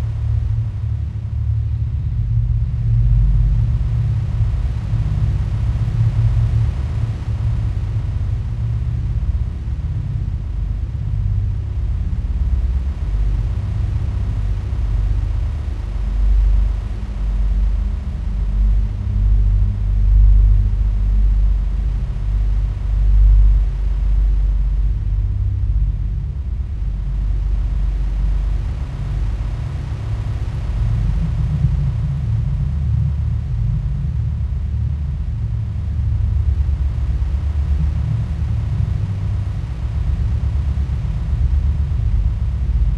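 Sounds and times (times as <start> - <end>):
deep rumbling drone: 0.0 - 42.9.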